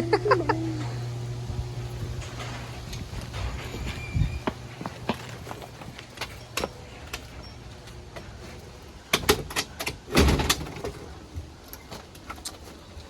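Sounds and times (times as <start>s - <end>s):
footsteps: 0.8s - 9.1s
clattering knocks and rattles: 2.1s - 7.6s.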